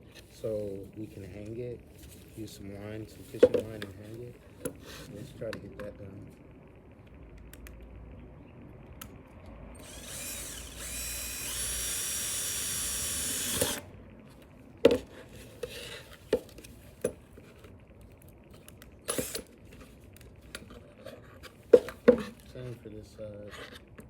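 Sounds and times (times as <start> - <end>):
electric drill whining: 9.8 - 13.9, 19.1 - 19.5.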